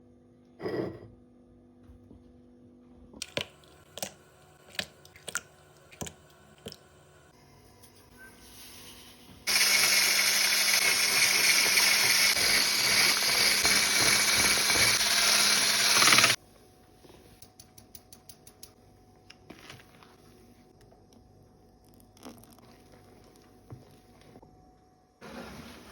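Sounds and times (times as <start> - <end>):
blender motor running: 9.5 - 16.4.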